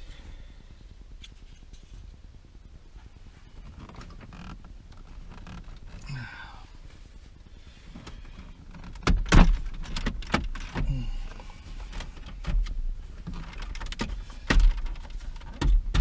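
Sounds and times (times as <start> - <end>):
short creak: 3.6 - 6.1
dull bumps: 7.7 - 16.0.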